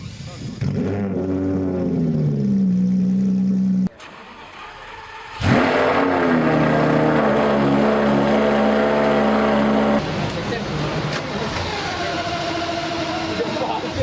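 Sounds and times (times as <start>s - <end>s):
car engine starting and idling: 0.0s - 14.0s.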